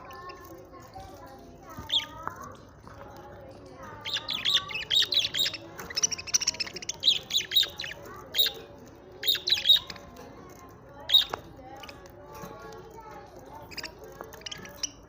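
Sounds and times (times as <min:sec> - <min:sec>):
budgerigars chirping: 0:04.0 - 0:10.0, 0:11.1 - 0:11.9.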